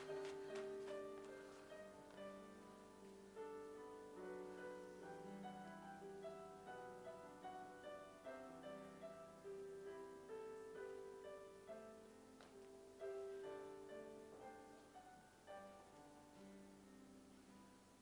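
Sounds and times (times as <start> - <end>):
soft piano music: 0.0 - 18.0.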